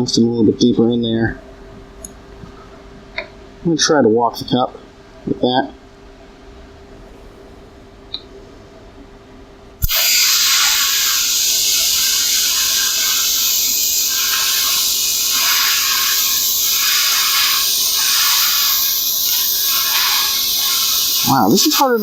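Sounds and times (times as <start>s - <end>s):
welding arc hissing: 9.8s - 22.0s
welding arc striking: 9.8s - 22.0s.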